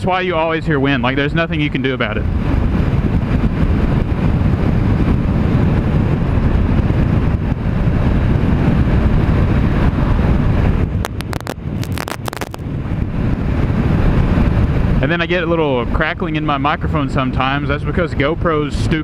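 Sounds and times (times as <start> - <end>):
wind buffeting microphone: 1.6 - 16.4
microphone crackling: 11.0 - 12.6.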